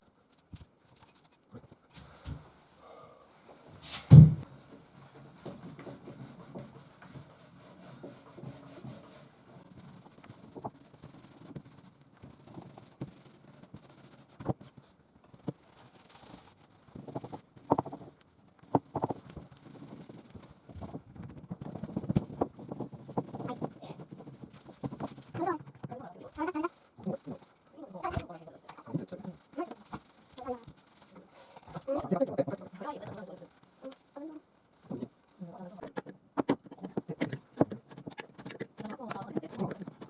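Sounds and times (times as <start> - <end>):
rubbing and scraping: 3.8 - 40.0
loud thump: 4.1 - 4.5.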